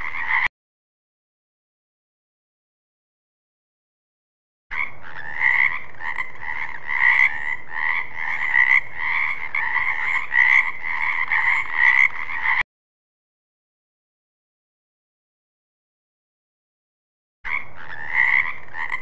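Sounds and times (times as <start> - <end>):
frog croaking: 0.0 - 0.5, 4.7 - 12.6, 17.5 - 19.0.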